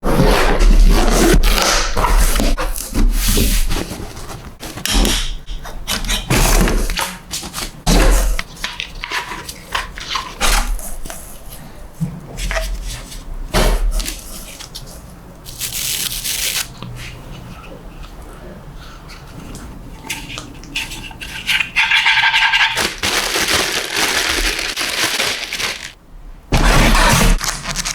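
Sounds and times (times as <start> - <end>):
packaging knocks and thumps: 22.8 - 27.9.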